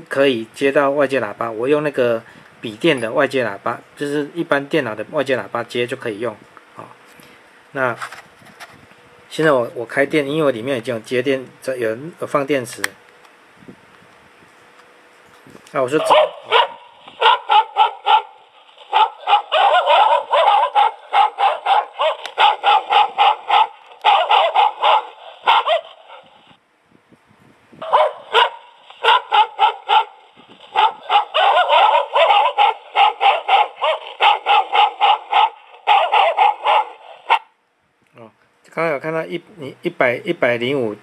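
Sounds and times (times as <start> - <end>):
recorded dog barking through speaker: 15.9 - 26.4, 27.8 - 37.5.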